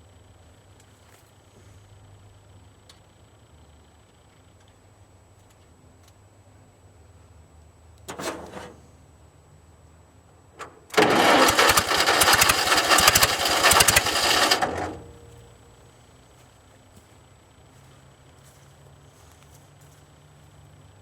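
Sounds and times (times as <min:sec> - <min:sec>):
engine starting and running roughly: 0:10.9 - 0:15.8.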